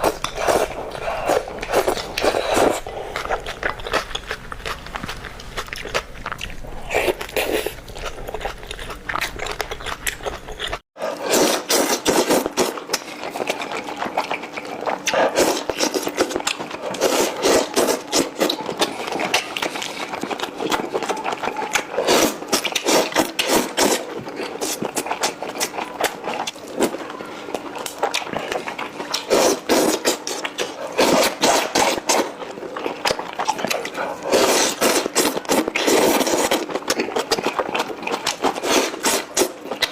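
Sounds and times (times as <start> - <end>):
close-miked chewing: 0.0 - 39.9.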